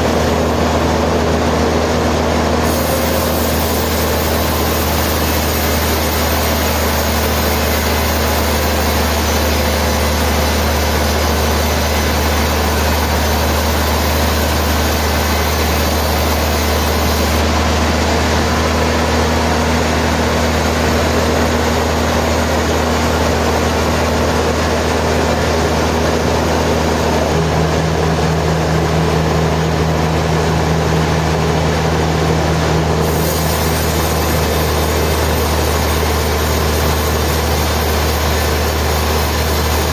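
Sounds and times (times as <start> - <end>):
sawmill machinery droning: 0.0 - 39.9.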